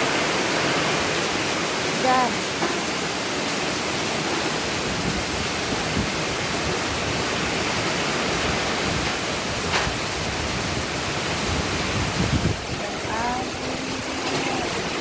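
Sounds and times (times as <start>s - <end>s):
heavy rain pouring: 0.0s - 15.0s.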